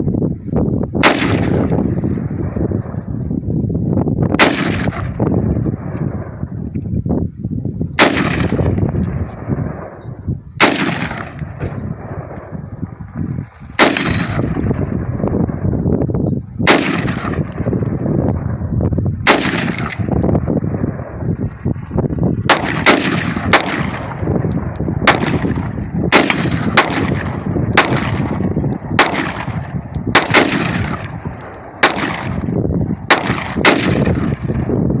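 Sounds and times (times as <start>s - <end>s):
rifle shots with echo: 1.0s - 3.1s, 4.4s - 6.5s, 8.0s - 13.0s, 13.8s - 15.7s, 16.6s - 18.4s, 19.2s - 20.1s, 22.5s - 34.8s.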